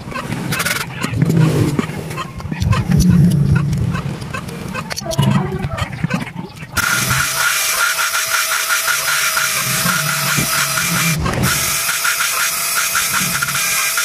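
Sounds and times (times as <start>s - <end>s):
fast even ticking: 0.0s - 14.0s.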